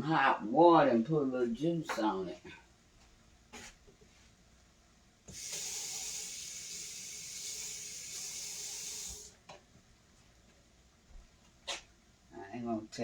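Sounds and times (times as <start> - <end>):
tap water running into container: 5.3 - 9.4.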